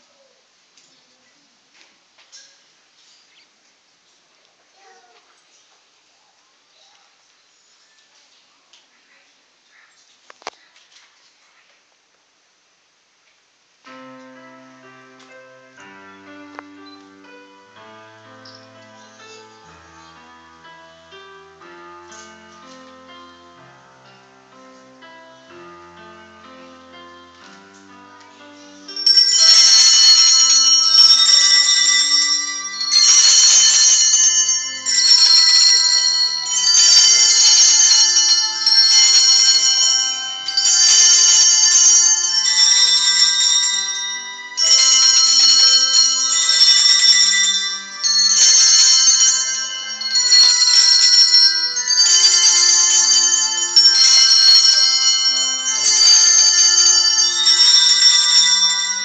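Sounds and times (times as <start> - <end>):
hand bells ringing: 28.8 - 59.0.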